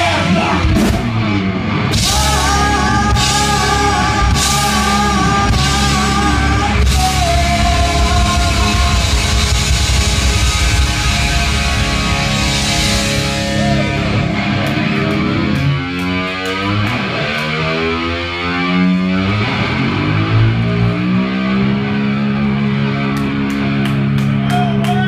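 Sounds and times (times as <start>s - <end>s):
overdriven electric guitar sliding notes: 0.0s - 24.5s
live rock band playing: 0.0s - 25.0s.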